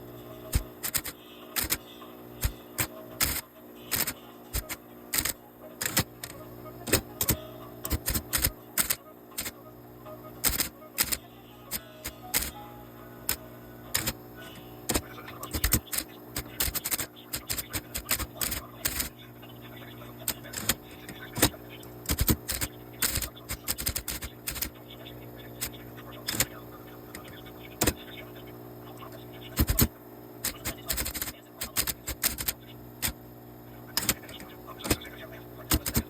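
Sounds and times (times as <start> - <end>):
steady low hum: 0.0 - 36.0
typewriter keys striking: 0.8 - 1.8, 2.4 - 6.2, 6.9 - 9.5, 10.4 - 12.6, 14.0 - 14.2, 14.9 - 19.1, 20.3 - 21.5, 22.1 - 24.7, 26.3 - 26.5, 29.6 - 33.2, 34.0 - 35.0, 35.7 - 36.0.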